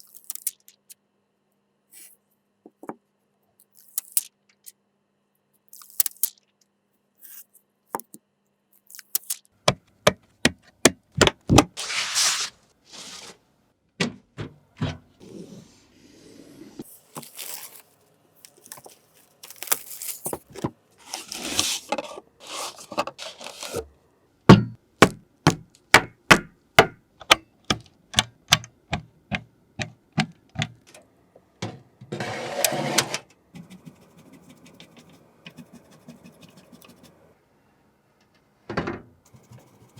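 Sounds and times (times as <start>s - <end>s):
scraping on hard objects: 21.0s - 23.9s, 32.1s - 36.8s.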